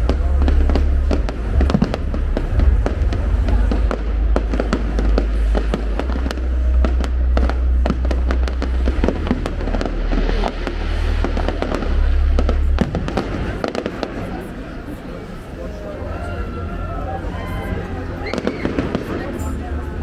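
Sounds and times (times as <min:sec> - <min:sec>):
fireworks bangs and crackles: 0:00.0 - 0:15.7, 0:18.2 - 0:20.0.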